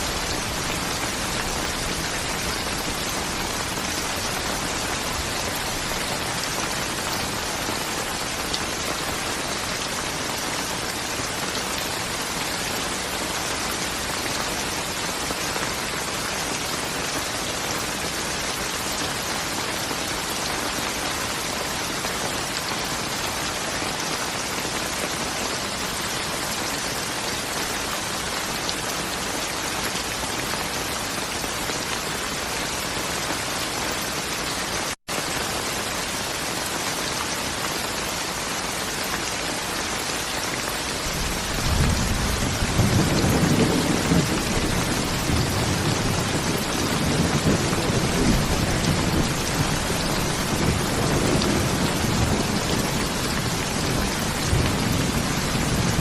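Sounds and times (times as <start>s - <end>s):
heavy rain hiss: 25.7s - 56.0s
low rolling thunder: 41.2s - 56.0s.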